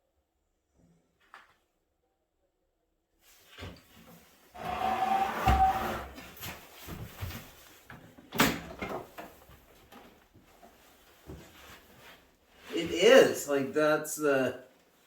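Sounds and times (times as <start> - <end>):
sheet metal scraping: 4.6 - 6.3.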